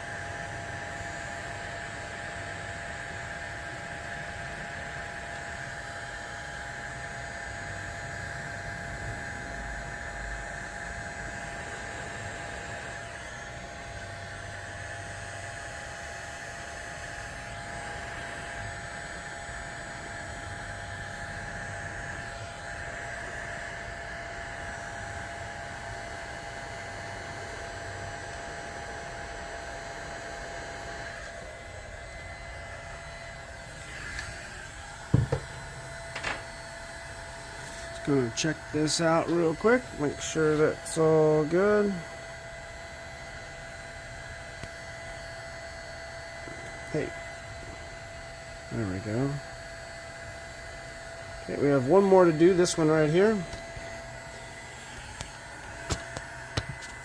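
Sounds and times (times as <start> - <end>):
electric blower motor whine: 0.0 - 57.0
blown air hissing: 32.8 - 42.0.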